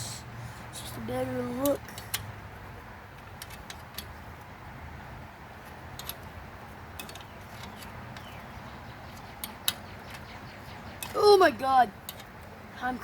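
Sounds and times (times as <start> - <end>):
hand tools clicking: 5.9 - 6.3, 7.0 - 8.4.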